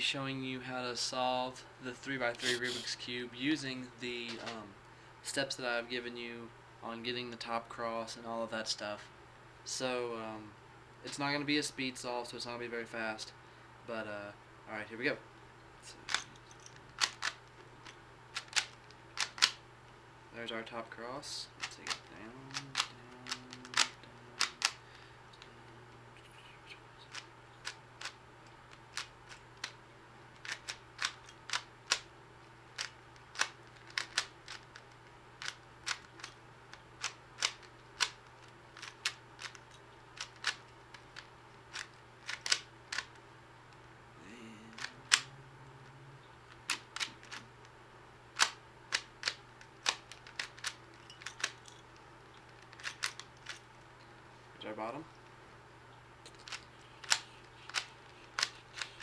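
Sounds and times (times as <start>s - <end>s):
puzzle cube clicking: 16.1s - 17.5s, 18.3s - 19.6s, 21.6s - 24.8s, 30.4s - 32.1s, 32.7s - 36.4s, 37.0s - 43.2s, 44.7s - 45.3s, 46.5s - 47.4s, 48.4s - 51.6s, 52.4s - 53.6s, 56.3s - 59.0s.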